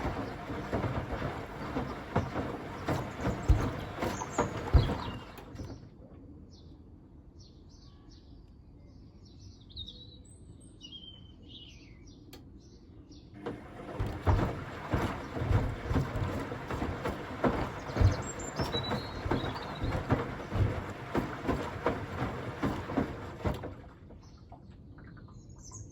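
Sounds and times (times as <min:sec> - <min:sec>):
heavy irregular thuds: 0:00.0 - 0:05.8, 0:13.4 - 0:24.0
washing machine drum tumbling: 0:00.0 - 0:05.8, 0:13.4 - 0:24.2
birds chirping: 0:00.0 - 0:05.9, 0:12.7 - 0:24.4.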